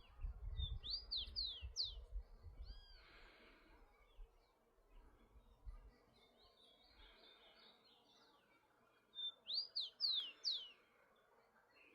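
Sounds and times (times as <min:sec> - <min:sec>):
faint birds chirping: 0:00.0 - 0:11.9
sparrow whistling song: 0:00.5 - 0:02.0, 0:09.2 - 0:10.8.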